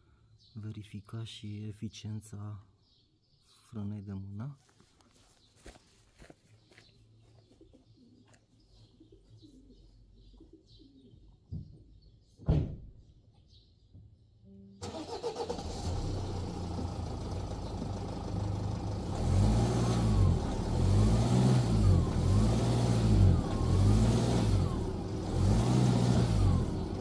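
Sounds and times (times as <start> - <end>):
car engine revving: 14.8 - 27.0.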